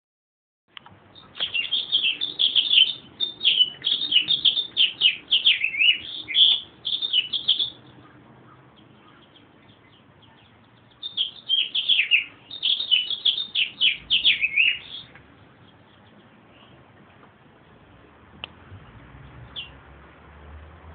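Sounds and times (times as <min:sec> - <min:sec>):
bird chattering calls: 0:01.2 - 0:15.1.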